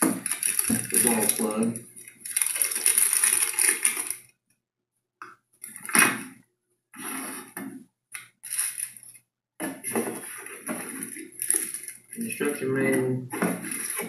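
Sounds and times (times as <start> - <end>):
packaging rustling: 0.0 - 4.3, 8.4 - 14.0
small accessories handled: 0.0 - 4.3, 8.2 - 9.2, 9.8 - 14.0.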